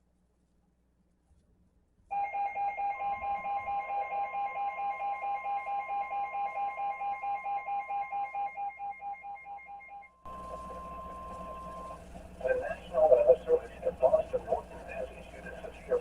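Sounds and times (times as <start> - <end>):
pulsing electronic alarm beep: 2.1 - 12.0
steady alarm tone: 2.1 - 16.0.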